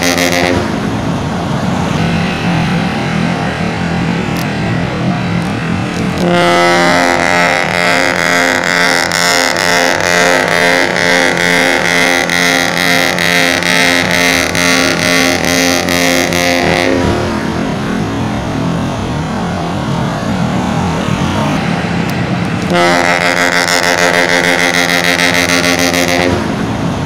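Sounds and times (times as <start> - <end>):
pulsing bus air horn: 0.0 - 0.9, 6.0 - 17.6, 22.6 - 26.7
vehicle and road noise: 0.0 - 27.0.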